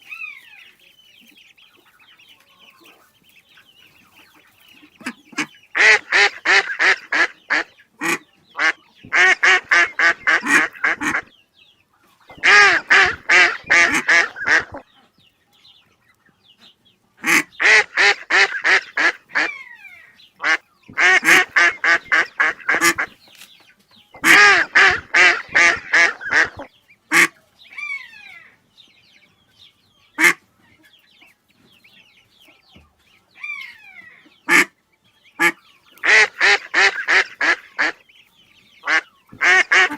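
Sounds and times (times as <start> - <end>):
duck quacking: 4.1 - 11.3, 12.3 - 14.8, 17.2 - 19.8, 20.4 - 23.2, 24.2 - 27.4, 30.2 - 30.4, 34.4 - 34.8, 35.4 - 38.1, 38.8 - 39.9.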